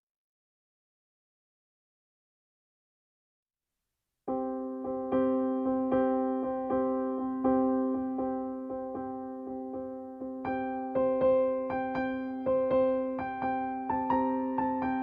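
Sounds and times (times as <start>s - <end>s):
electric piano melody: 4.3s - 15.0s.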